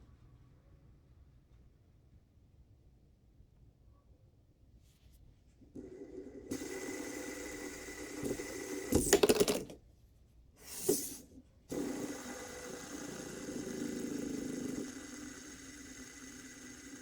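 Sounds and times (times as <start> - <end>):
fidget spinner whirring: 5.9 - 9.8, 10.7 - 17.0.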